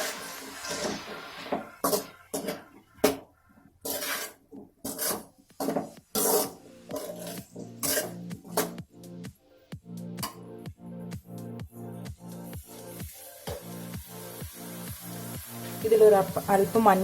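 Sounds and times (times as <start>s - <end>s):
spatula scraping frying pan: 0.0s - 2.8s, 3.8s - 8.8s
frying sizzle: 0.0s - 3.0s, 12.2s - 17.0s.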